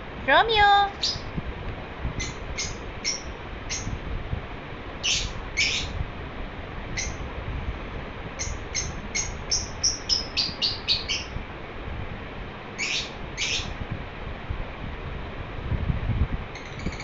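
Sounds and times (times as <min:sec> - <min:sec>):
lovebird chirping: 0:01.0 - 0:01.3, 0:08.4 - 0:11.4
harsh bird calls: 0:05.0 - 0:06.0, 0:08.4 - 0:11.4, 0:12.8 - 0:13.7.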